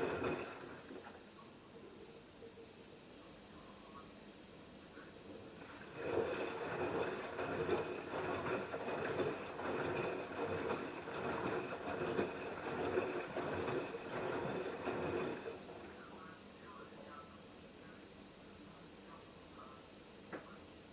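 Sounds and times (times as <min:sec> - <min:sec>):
laundry and water sloshing: 0:00.0 - 0:01.3, 0:05.4 - 0:16.0
washing machine running: 0:00.0 - 0:16.3.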